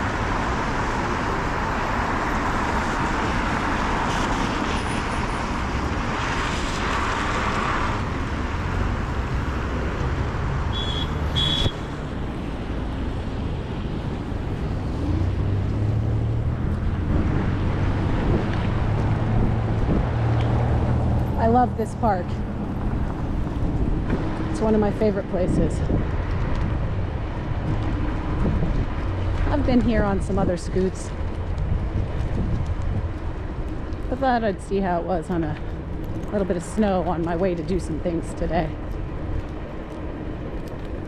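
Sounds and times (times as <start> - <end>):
wind buffeting microphone: 11.4 - 41.0.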